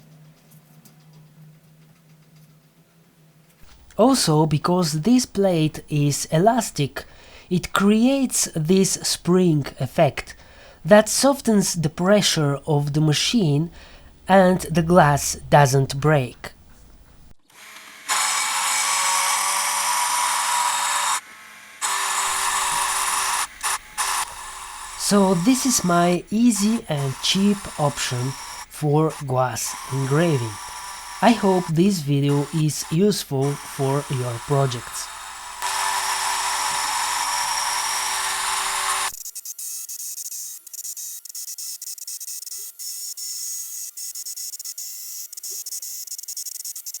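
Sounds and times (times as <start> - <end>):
rotary tool grinding glass: 21.8 - 39.3.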